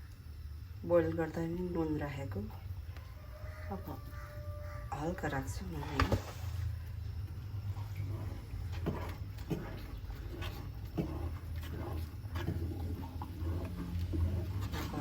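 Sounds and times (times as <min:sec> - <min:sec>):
steady low hum: 0:00.0 - 0:15.0
spoon scraping in a pan: 0:07.6 - 0:15.0.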